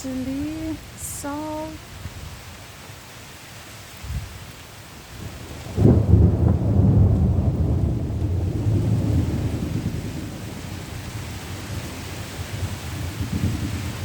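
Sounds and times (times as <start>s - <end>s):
steady rain: 0.0s - 14.0s
thunder rumbling: 5.2s - 14.0s.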